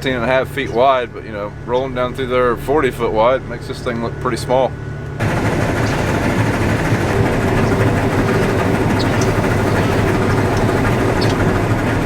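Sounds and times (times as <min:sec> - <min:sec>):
mechanical rush: 0:05.2 - 0:11.6
combine engine drone: 0:05.2 - 0:12.0.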